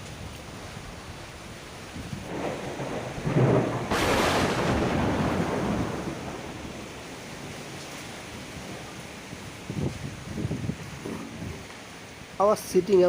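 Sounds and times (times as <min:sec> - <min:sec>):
rain hiss: 0:00.0 - 0:13.0
wind: 0:00.0 - 0:13.0
thunderclap: 0:02.0 - 0:08.8.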